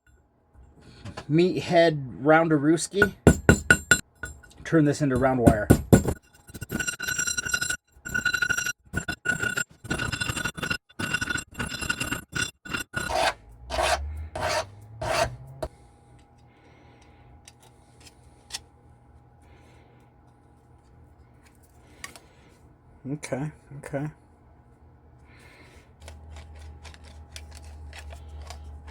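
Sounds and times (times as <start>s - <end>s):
hand file rasping on copper wire: 5.2s - 15.7s.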